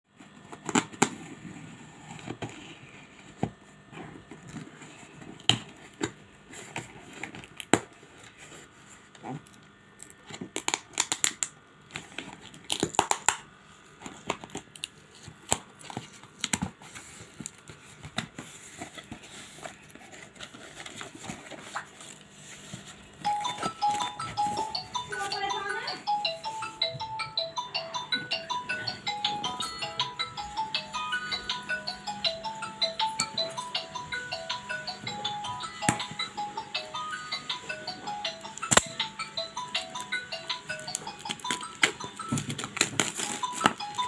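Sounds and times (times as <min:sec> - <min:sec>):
packaging crinkling and tearing: 0:09.5 - 0:13.4, 0:41.2 - 0:44.0.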